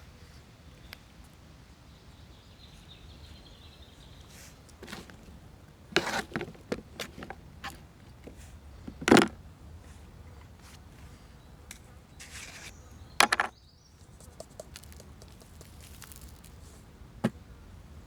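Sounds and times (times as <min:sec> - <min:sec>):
sharp clicks and knocks: 0:13.2 - 0:13.5, 0:14.1 - 0:16.3.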